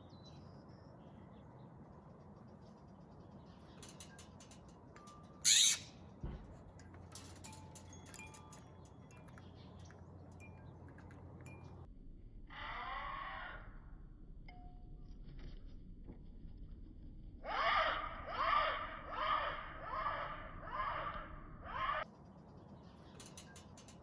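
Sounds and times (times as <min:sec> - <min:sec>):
harsh bird call: 0:05.5 - 0:05.8
faint bird chirps: 0:05.5 - 0:05.9
raspy bird call: 0:05.5 - 0:05.9.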